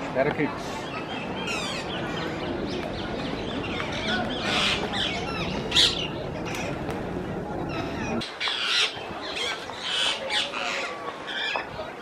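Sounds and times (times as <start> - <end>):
flock of birds calling: 0.6 - 6.9, 7.6 - 12.0.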